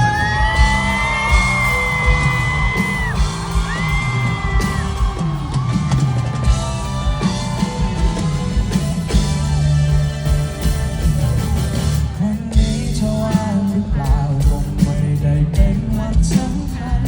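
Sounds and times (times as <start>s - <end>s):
crowd yells and whoops: 0.0s - 12.0s
drums: 0.0s - 17.0s
live rock band playing: 0.0s - 17.0s.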